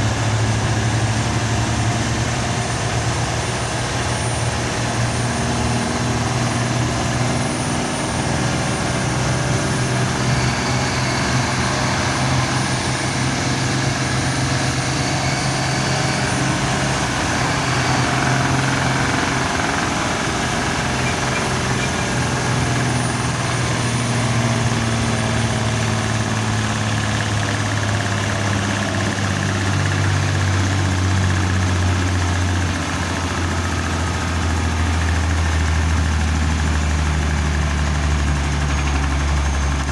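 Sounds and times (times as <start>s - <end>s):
diesel bus engine running: 0.0s - 39.9s
turbo whistle: 9.4s - 23.6s.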